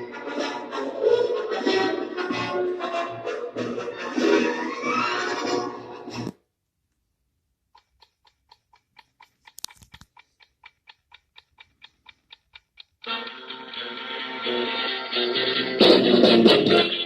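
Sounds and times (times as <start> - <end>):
music: 0.0 - 6.3, 13.0 - 17.0
steady ticking clicks: 7.6 - 13.1.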